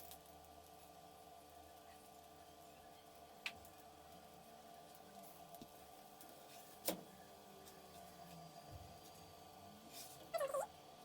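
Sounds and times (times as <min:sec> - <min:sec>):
faint room hum: 0:00.0 - 0:11.0.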